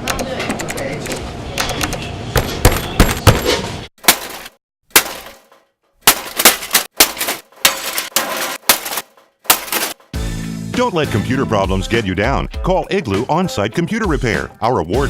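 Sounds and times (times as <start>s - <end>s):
computer being smashed: 2.4s - 10.0s.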